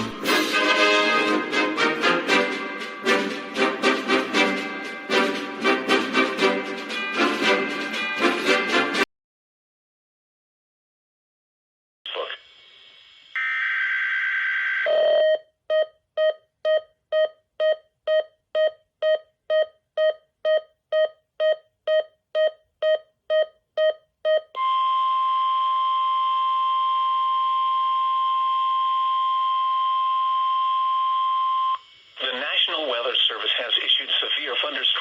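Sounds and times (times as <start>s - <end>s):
short beeps: 15.0s - 31.8s.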